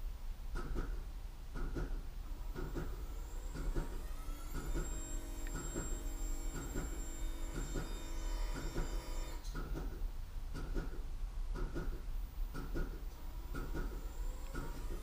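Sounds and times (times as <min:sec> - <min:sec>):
electric motor whining: 0:03.1 - 0:09.4.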